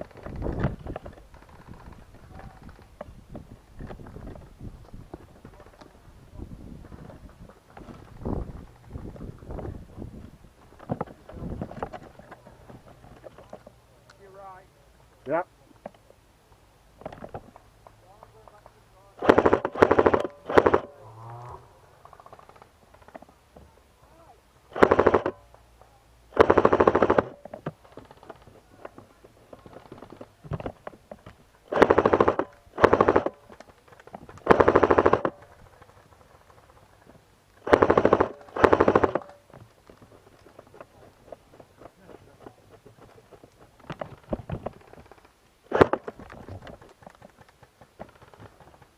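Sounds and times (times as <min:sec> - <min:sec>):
rustling: 0:00.0 - 0:14.5, 0:27.0 - 0:48.9
airsoft gun bursts: 0:19.2 - 0:20.9, 0:24.7 - 0:25.4, 0:26.3 - 0:27.4, 0:31.7 - 0:33.5, 0:34.4 - 0:35.5, 0:37.6 - 0:39.5.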